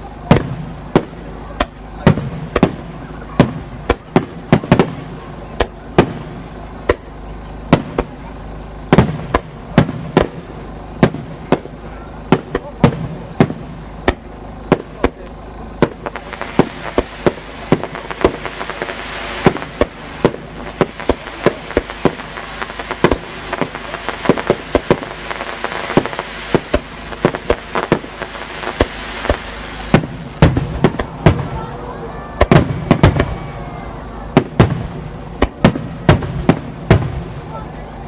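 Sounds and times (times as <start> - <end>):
fireworks bangs: 0.0 - 38.0
hissing crackle of fireworks: 0.0 - 38.0.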